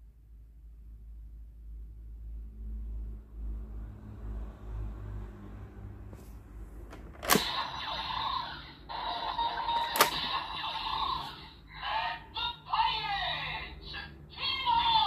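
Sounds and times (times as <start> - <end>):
electronic toy sound effects and music: 7.3 - 15.0.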